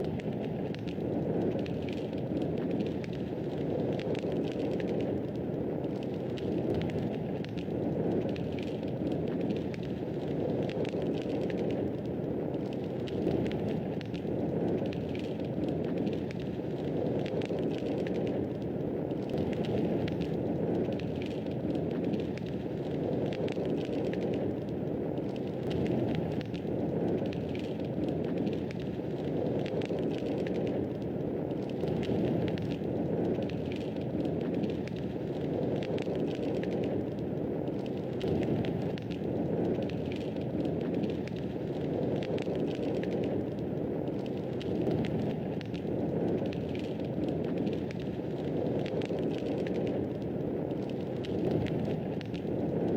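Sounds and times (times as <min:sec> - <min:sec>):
wood fire crackling: 0:00.0 - 0:52.9.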